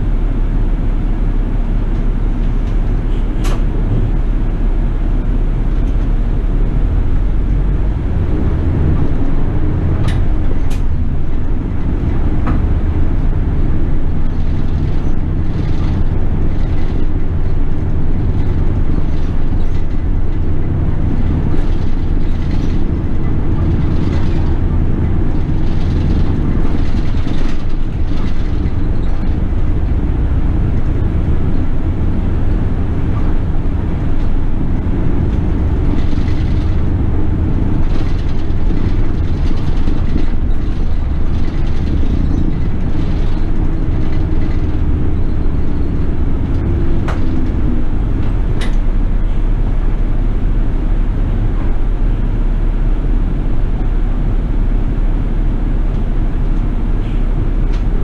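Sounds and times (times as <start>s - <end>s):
bus engine and road noise: 0.0s - 58.0s.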